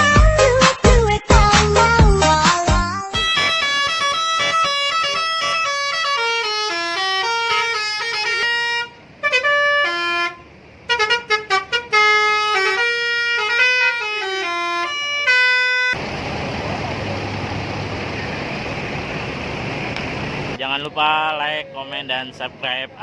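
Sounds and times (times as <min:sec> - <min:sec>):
multi-tone bus air horn melody: 0:03.1 - 0:16.0.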